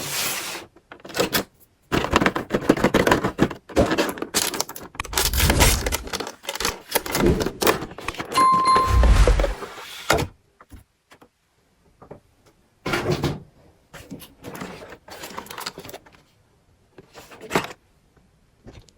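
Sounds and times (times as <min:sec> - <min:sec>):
packaging crinkling and tearing: 0:04.4 - 0:07.2.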